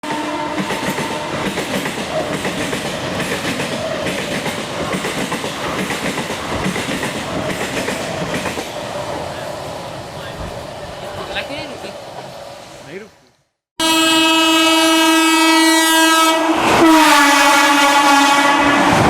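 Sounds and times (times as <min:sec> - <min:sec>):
train wheels clattering on rails: 0:00.5 - 0:08.8.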